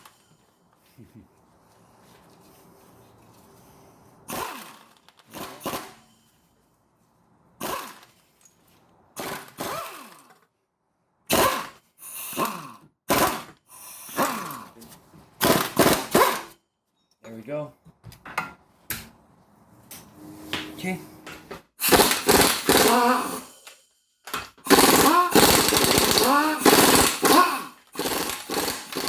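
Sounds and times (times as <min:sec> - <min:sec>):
power wrench bursts: 0:04.3 - 0:06.3, 0:07.6 - 0:08.2, 0:09.2 - 0:10.3, 0:11.3 - 0:14.8, 0:15.4 - 0:16.6, 0:21.8 - 0:29.0.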